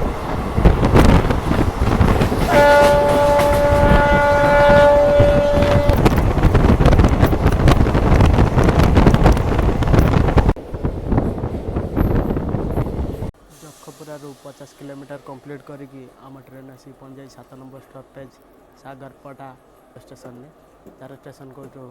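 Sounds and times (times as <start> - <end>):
train rattling at speed: 0.0 - 13.4
train horn blast: 2.4 - 6.5.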